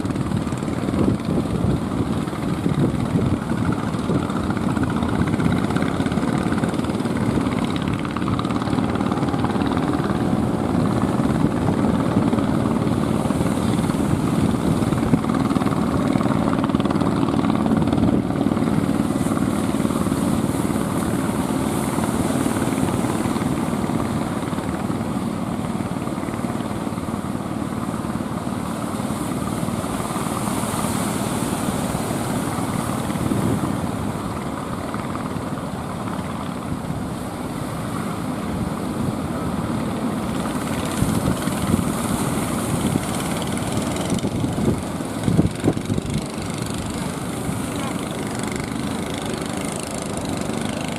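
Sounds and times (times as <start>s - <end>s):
boat engine running: 0.0s - 50.9s
surf: 0.0s - 50.9s.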